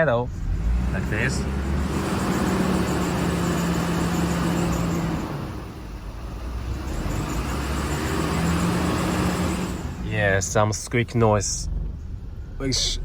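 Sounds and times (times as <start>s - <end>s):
engine running: 0.0s - 13.0s
drive belt squeak: 1.1s - 5.9s, 6.7s - 10.0s.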